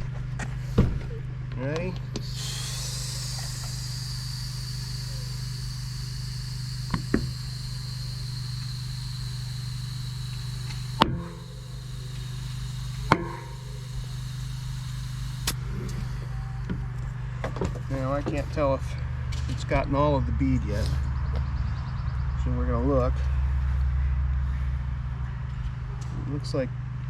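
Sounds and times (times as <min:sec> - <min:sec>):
steady low hum: 0:00.0 - 0:27.0
tire beads popping onto rim: 0:02.2 - 0:15.6
air hissing into bike tire: 0:02.2 - 0:16.3.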